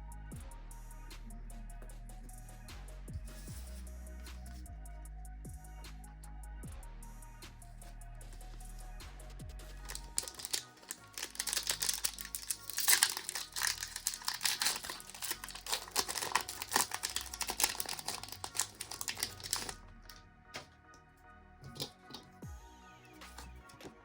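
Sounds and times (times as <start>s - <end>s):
foil wrapper crinkling: 9.8s - 20.2s.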